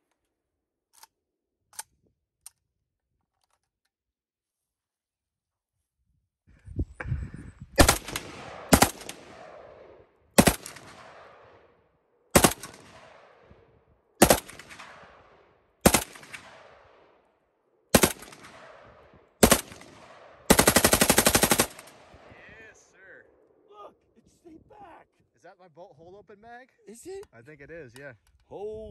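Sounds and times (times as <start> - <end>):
automatic gunfire bursts: 7.8 - 9.4, 10.4 - 11.3, 12.4 - 13.2, 14.2 - 15.1, 15.8 - 16.7, 17.9 - 18.8, 19.4 - 22.1
gunshot echo: 7.8 - 11.6, 12.4 - 17.1, 18.0 - 20.5.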